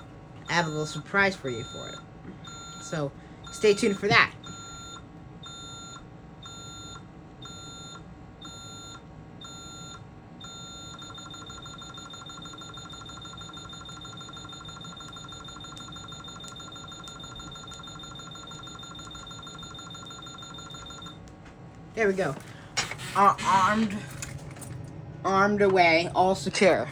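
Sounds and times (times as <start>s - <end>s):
alarm keypad beeping: 0.5s - 21.2s.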